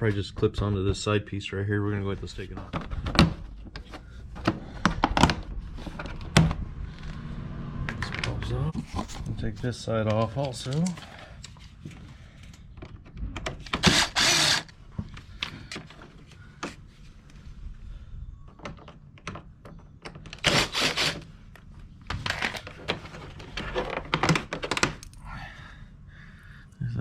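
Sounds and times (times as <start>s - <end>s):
plastic and screws clicking: 12.4s - 14.7s.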